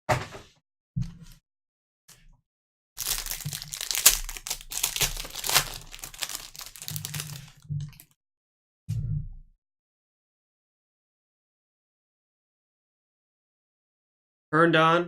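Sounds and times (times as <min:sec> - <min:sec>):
foil wrapper tearing and crinkling: 0:03.0 - 0:08.1.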